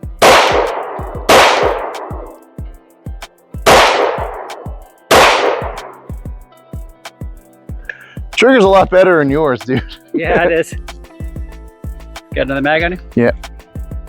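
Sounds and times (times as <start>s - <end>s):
handgun shots echoing: 0.2s - 2.4s, 3.7s - 6.1s.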